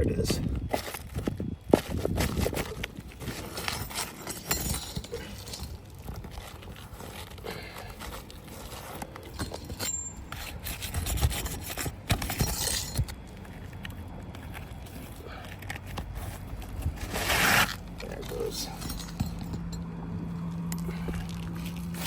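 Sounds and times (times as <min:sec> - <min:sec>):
roof shingles scraping: 0:16.0 - 0:17.8.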